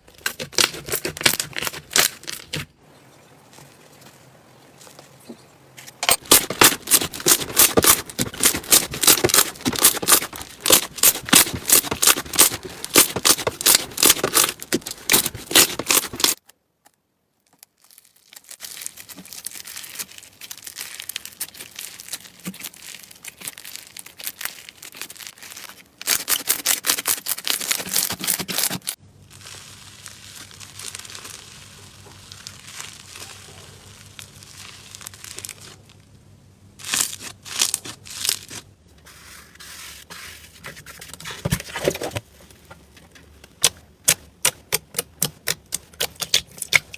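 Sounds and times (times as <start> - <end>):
slime crackling and popping: 6.1 - 16.5, 17.5 - 36.0, 36.8 - 38.6, 43.5 - 46.9.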